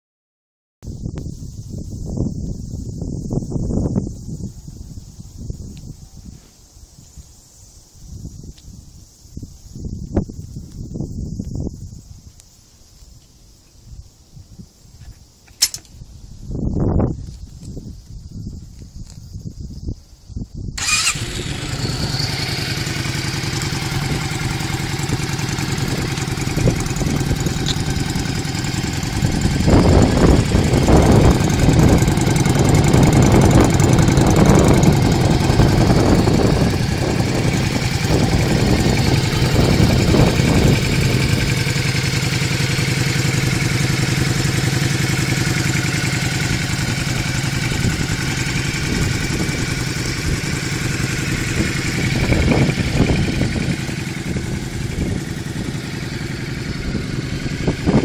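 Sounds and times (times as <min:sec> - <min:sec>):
motorcycle engine idling and revving: 0:20.8 - 0:58.0.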